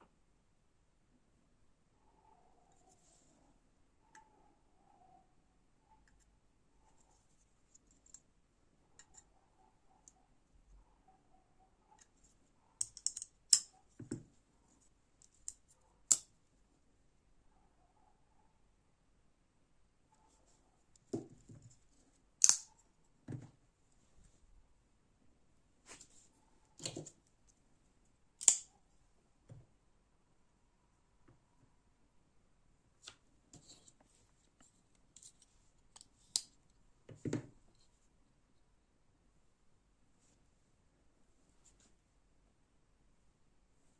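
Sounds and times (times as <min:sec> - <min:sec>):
folding knife clicks: 0:22.4 - 0:22.7, 0:28.4 - 0:28.7.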